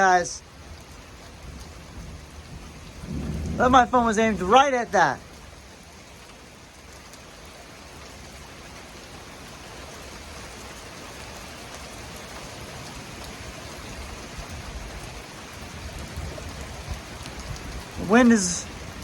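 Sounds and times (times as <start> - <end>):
heavy rain pouring: 0.0 - 19.0
wind buffeting microphone: 1.4 - 5.3, 14.3 - 19.0.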